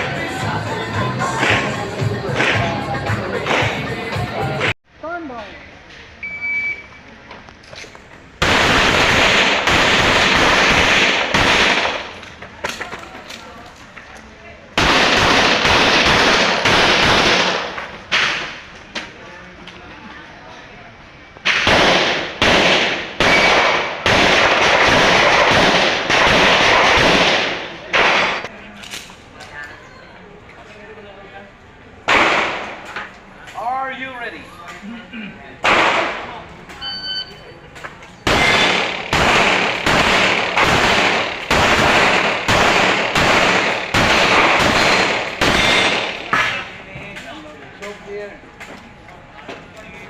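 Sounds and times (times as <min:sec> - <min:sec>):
gunshots with loud echo: 0:02.3 - 0:02.8, 0:08.4 - 0:12.2, 0:14.8 - 0:18.6, 0:21.5 - 0:28.5, 0:32.1 - 0:32.8, 0:35.6 - 0:36.4, 0:38.2 - 0:46.7.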